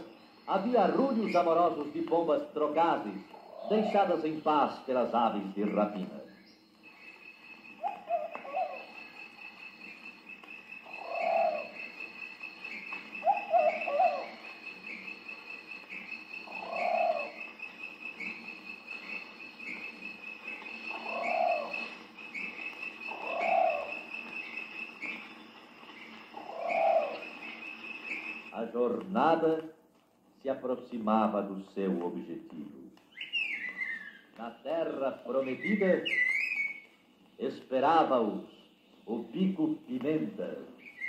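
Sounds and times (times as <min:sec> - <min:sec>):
pigeons cooing: 0:02.7 - 0:06.0, 0:07.0 - 0:28.6.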